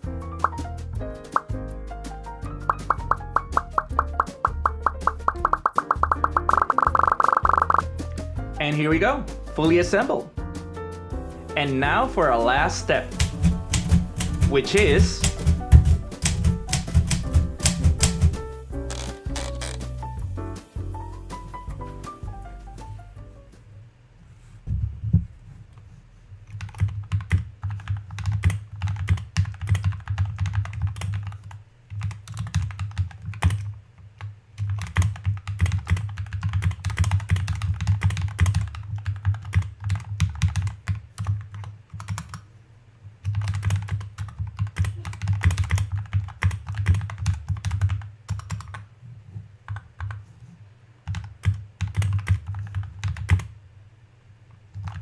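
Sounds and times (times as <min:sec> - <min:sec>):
mechanical keyboard typing: 0:02.6 - 0:08.0, 0:11.8 - 0:19.9, 0:26.5 - 0:33.8, 0:34.6 - 0:42.4, 0:43.2 - 0:48.8, 0:51.0 - 0:53.5, 0:54.7 - 0:55.0.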